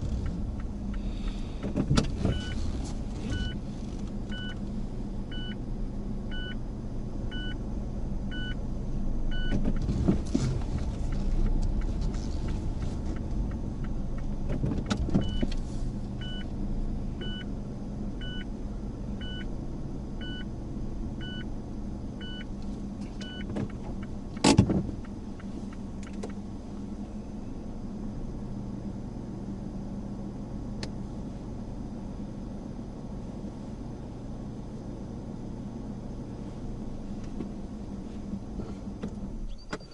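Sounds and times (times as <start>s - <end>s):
turn signal ticking: 0.0s - 5.7s, 9.2s - 18.6s, 19.2s - 19.6s, 20.2s - 27.0s
car engine and road noise: 0.0s - 39.9s.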